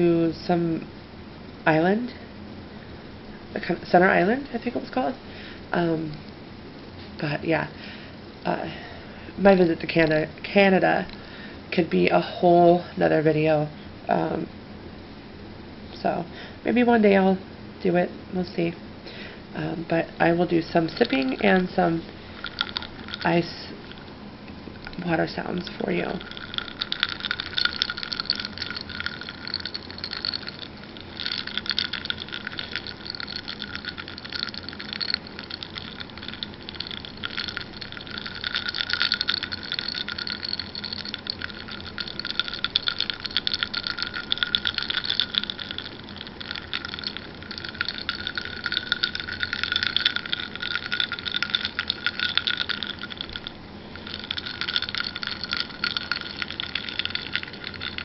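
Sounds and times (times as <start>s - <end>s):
ice cubes clinking in glass: 20.8s - 23.5s, 24.8s - 58.0s.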